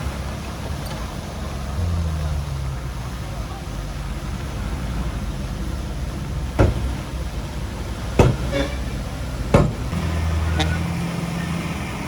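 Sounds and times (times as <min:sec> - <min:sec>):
diesel machinery rumbling: 0:00.0 - 0:12.0
sharp knocks: 0:06.5 - 0:07.2, 0:08.1 - 0:08.9, 0:09.5 - 0:10.0.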